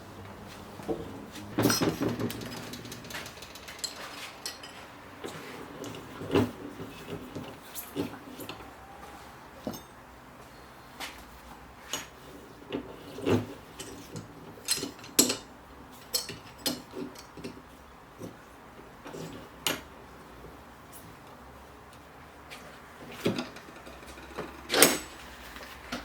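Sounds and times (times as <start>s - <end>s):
hard objects clinking and knocking: 0.9s - 6.4s.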